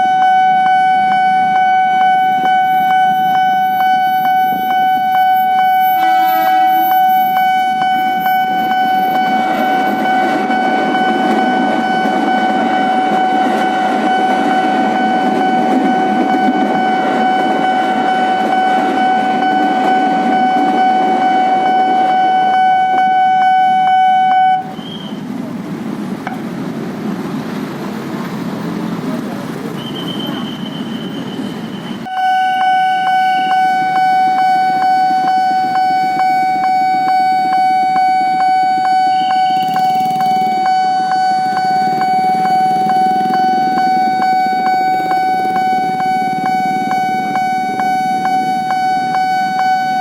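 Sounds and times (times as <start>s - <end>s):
level-crossing warning tone: 0.0s - 25.6s, 29.4s - 50.0s
traffic rumble: 1.0s - 50.0s
short horn toot: 5.9s - 7.1s.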